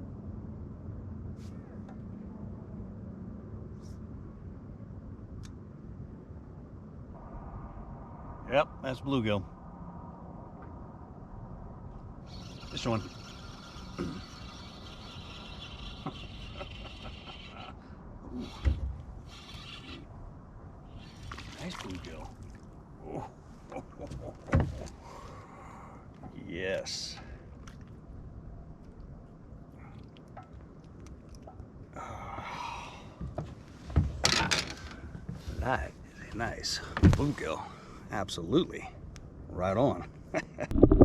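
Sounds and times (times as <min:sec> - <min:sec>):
low steady rumble: 0:00.0 - 0:16.6
fishing reel whirring: 0:12.3 - 0:17.6, 0:18.4 - 0:20.1.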